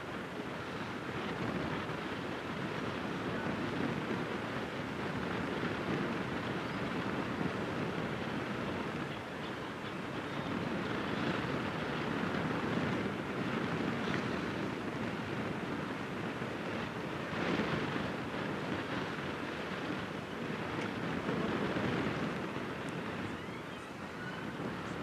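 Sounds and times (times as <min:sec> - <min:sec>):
wind gusting against microphone: 0:00.0 - 0:25.0.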